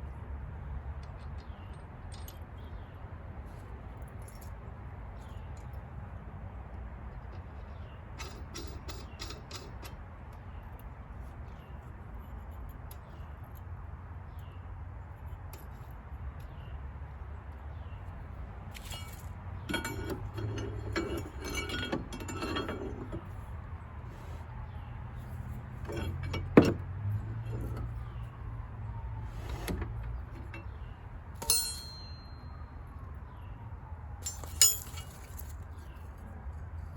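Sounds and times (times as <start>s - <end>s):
metal tools clinking and clattering: 7.7s - 10.0s, 18.7s - 23.4s, 25.8s - 28.0s, 29.5s - 32.5s, 34.2s - 36.0s.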